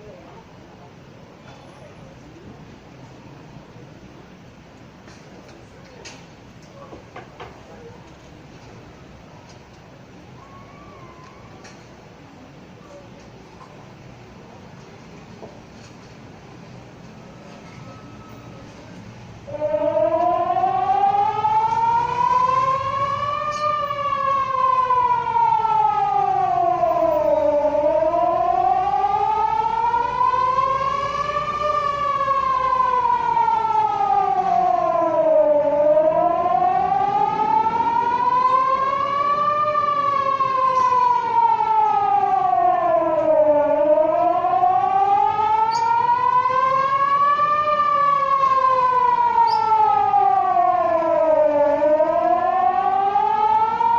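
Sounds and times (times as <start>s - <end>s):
warning siren wailing: 17.2s - 53.9s.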